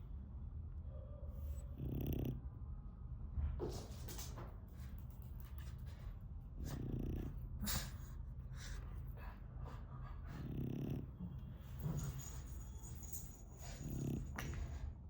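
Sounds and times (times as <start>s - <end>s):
dog snoring: 1.4s - 2.5s, 6.6s - 9.3s, 10.1s - 14.8s
dog breathing softly: 4.9s - 15.0s.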